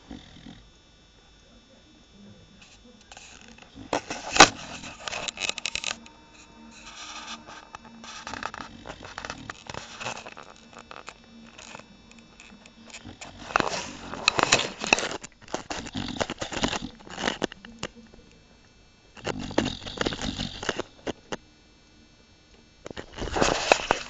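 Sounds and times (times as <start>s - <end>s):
dog snoring: 0.0s - 0.7s, 2.6s - 18.1s, 19.2s - 21.4s.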